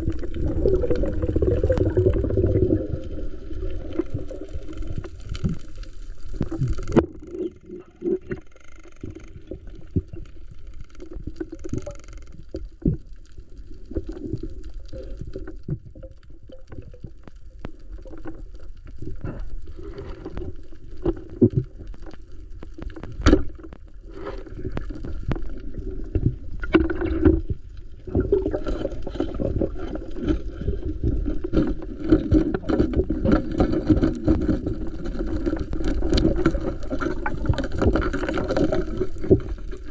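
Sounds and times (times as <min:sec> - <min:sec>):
muffled water gurgling: 0:00.0 - 0:39.9.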